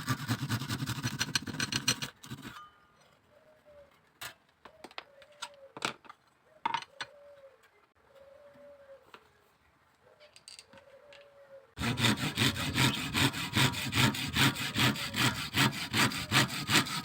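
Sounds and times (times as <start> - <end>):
scraping clicks on bamboo: 0.8 - 2.6.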